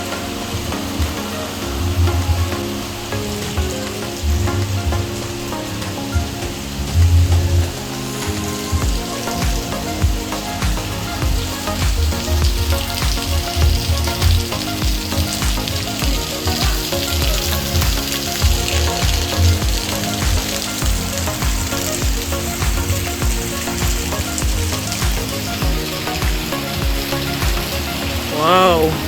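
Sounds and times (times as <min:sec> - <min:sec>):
background music with bass beat: 0:00.0 - 0:29.0
waterfall rushing: 0:00.0 - 0:29.0.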